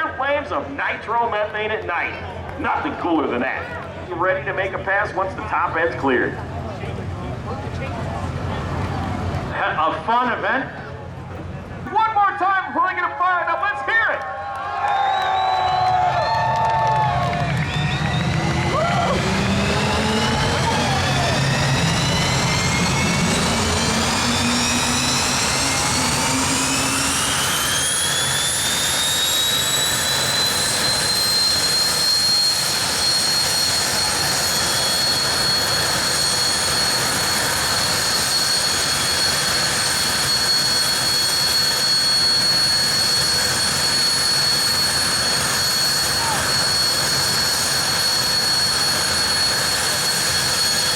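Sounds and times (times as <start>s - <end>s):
dragster engine whine: 0.0s - 13.0s, 14.8s - 50.9s
rushing noise: 15.7s - 50.9s.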